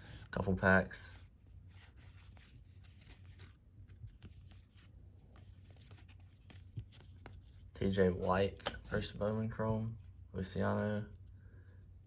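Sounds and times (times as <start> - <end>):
trading cards rustling: 0.0 - 9.6
low steady hum: 0.0 - 12.0.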